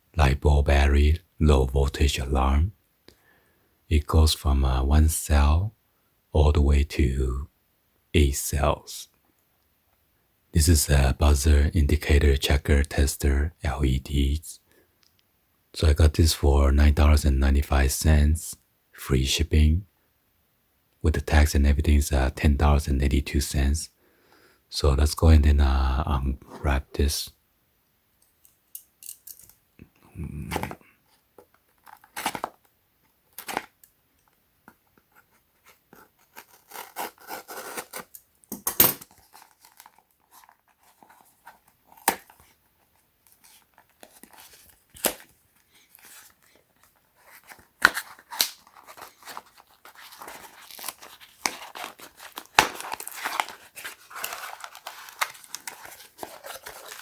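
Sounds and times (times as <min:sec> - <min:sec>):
packaging tearing and crinkling: 0:33.3 - 0:33.7, 0:43.4 - 0:45.3, 0:45.9 - 0:57.0.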